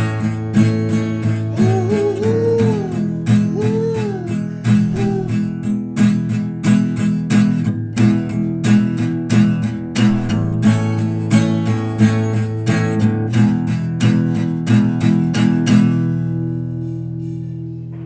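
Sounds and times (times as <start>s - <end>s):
bending lead guitar melody: 0.0s - 6.0s, 9.5s - 13.2s
strummed rock guitar: 0.0s - 17.3s.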